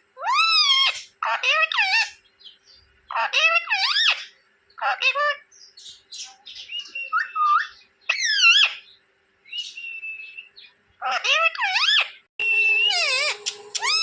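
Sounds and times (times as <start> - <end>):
parrot chirping and squawking: 0.2 - 2.2, 3.1 - 5.5, 6.7 - 9.8, 10.6 - 14.0
whistled note: 12.4 - 14.0.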